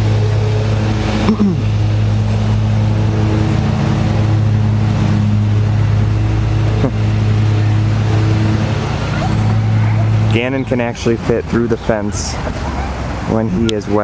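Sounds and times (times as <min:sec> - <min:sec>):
engine humming: 0:00.0 - 0:14.0
noisy hiss: 0:00.0 - 0:14.0.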